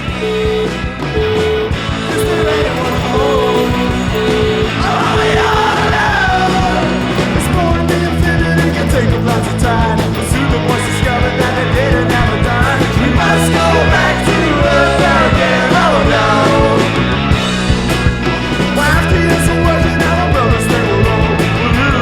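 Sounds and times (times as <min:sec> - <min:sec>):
punk rock music with singing: 0:00.0 - 0:22.0.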